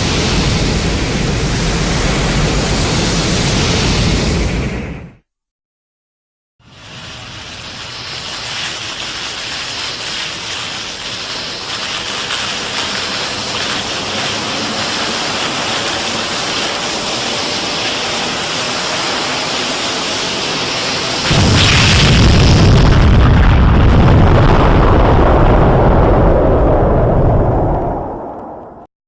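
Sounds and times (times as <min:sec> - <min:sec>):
deep beam blast: 0:00.0 - 0:05.2, 0:06.7 - 0:28.9
rushing hiss: 0:00.0 - 0:05.2, 0:06.6 - 0:23.1.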